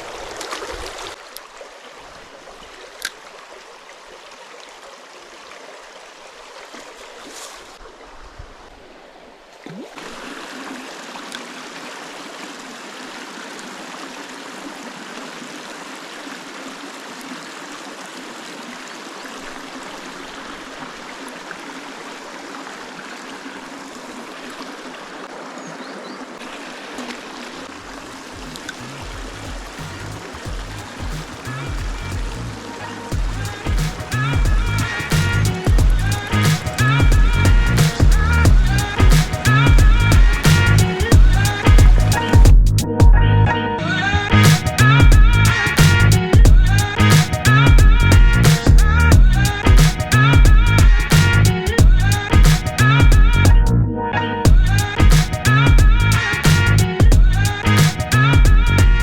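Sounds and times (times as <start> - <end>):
stream water rushing: 0.0 - 42.8, 43.8 - 53.7, 54.5 - 59.0.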